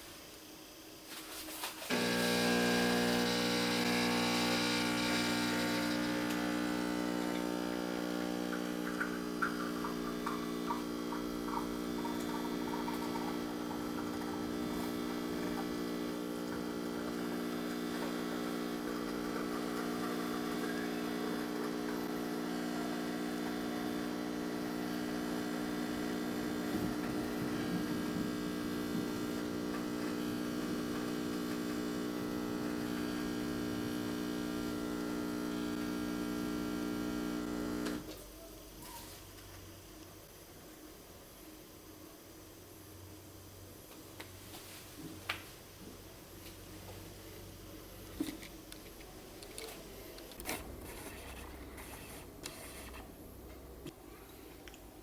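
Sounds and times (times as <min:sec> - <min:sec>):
espresso machine pump buzzing: 0:01.9 - 0:38.1, 0:50.4 - 0:53.9.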